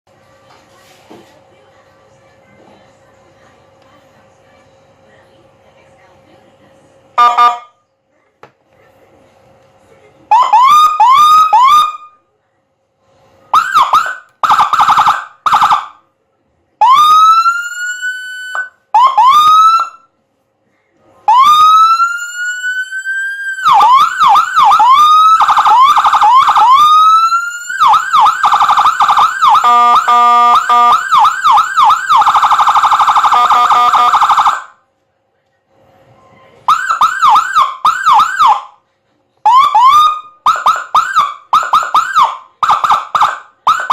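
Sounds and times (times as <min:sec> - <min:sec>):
electronic siren: 0:07.2 - 0:07.7, 0:10.3 - 0:12.2, 0:13.5 - 0:16.0, 0:16.8 - 0:20.1, 0:21.3 - 0:34.8, 0:36.7 - 0:38.8, 0:39.4 - 0:43.9.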